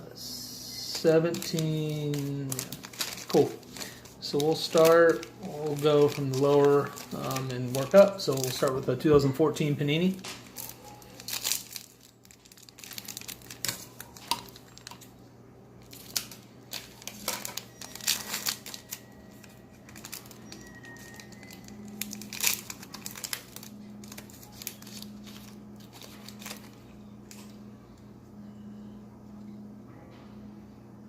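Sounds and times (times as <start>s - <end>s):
wrapper tearing and crinkling: 0.8s - 9.0s, 10.0s - 15.1s, 15.8s - 27.5s.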